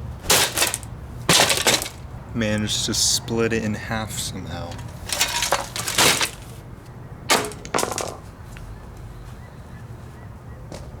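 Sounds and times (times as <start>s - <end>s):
plastic fan clattering and cracking: 0.2s - 2.1s, 4.7s - 6.6s, 7.3s - 8.3s.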